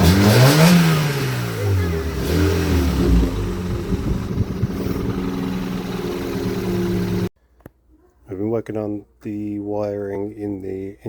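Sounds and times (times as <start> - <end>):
car engine idling: 0.0 - 7.3.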